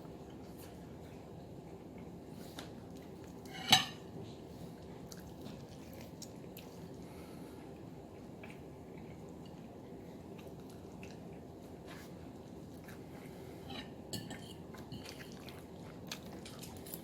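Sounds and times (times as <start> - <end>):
dishes clattering: 3.5 - 4.1, 13.7 - 15.3.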